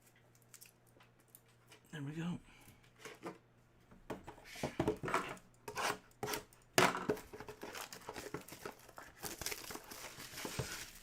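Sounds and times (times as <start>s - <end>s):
plastic wrappers crinkling and tearing: 0.0s - 1.4s, 7.3s - 11.0s.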